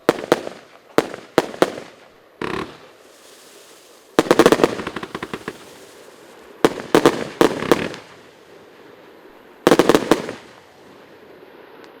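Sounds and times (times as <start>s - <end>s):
fireworks bangs: 0.0s - 8.9s, 9.6s - 11.0s.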